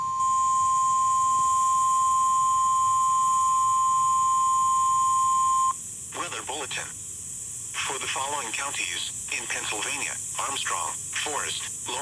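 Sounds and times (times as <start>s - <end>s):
steady alarm tone: 0.0s - 5.8s.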